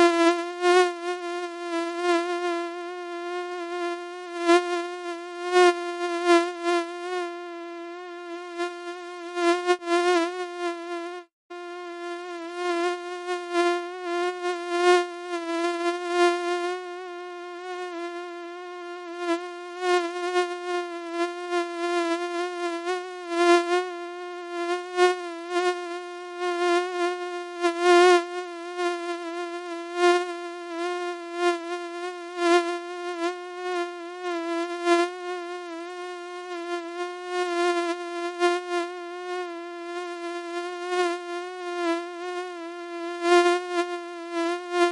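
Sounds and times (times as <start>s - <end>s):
mosquito buzzing: 0.0s - 44.9s.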